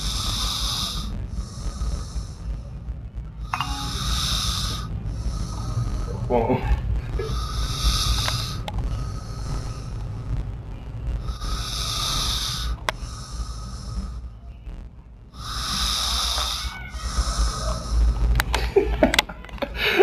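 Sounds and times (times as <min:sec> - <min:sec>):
person snoring: 0:00.0 - 0:02.5, 0:03.4 - 0:10.0, 0:11.2 - 0:14.2, 0:15.4 - 0:18.2.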